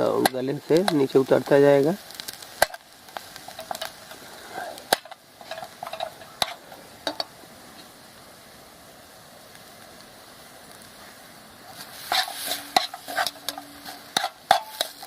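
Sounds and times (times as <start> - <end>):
faint sizzle of frying: 0.0 - 15.0
spoon scraping a pan: 4.6 - 7.3, 11.8 - 15.0.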